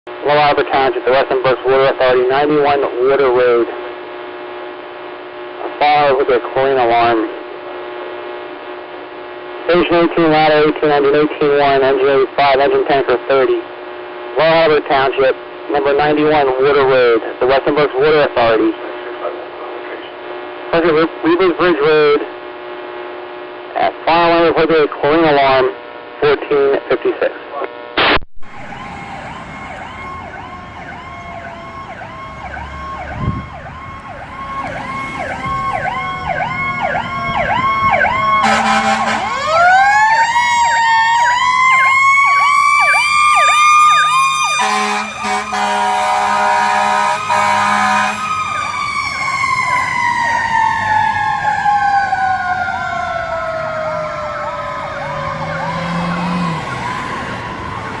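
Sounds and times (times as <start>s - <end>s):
horn blaring: 28.4s - 39.9s, 44.5s - 49.0s, 53.4s - 58.0s
fire truck siren: 28.4s - 58.0s.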